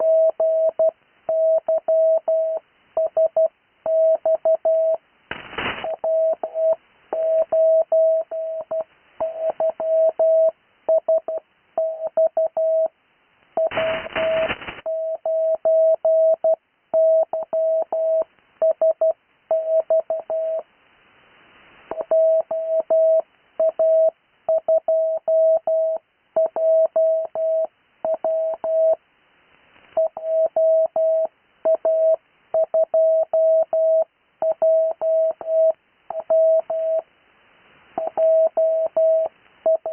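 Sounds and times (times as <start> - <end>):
radio hiss: 5.2 - 7.2, 13.7 - 14.9
burst of noise: 5.3 - 6.0, 13.7 - 14.9
morse code tone: 13.6 - 20.6, 38.0 - 39.9.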